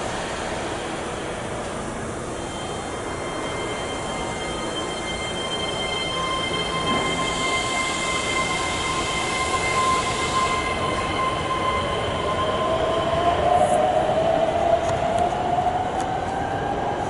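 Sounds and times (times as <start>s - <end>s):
train brakes squealing: 0.0s - 14.6s
train whine: 0.0s - 17.0s.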